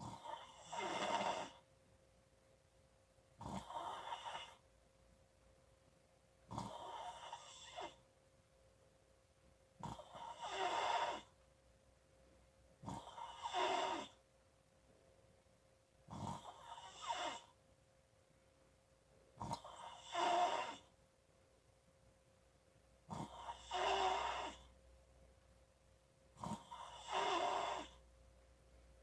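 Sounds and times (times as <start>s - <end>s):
faint steady hum: 0.0s - 29.0s
squeaky whistling snores: 0.1s - 1.6s, 3.4s - 4.6s, 6.5s - 8.0s, 9.8s - 11.4s, 12.8s - 14.2s, 16.1s - 17.6s, 19.4s - 20.9s, 23.1s - 24.7s, 26.4s - 28.0s.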